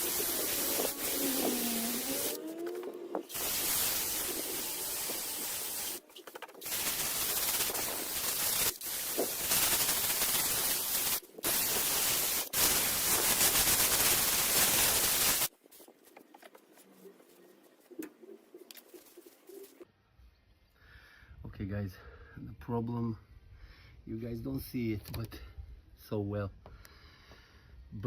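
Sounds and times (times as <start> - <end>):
power sander grinding metal: 0.0 - 3.2.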